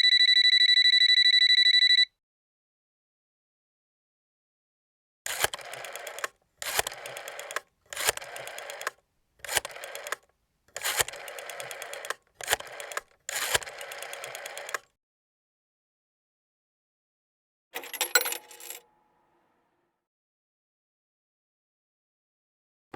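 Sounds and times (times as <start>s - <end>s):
rotary telephone dial clicking: 5.3s - 14.9s.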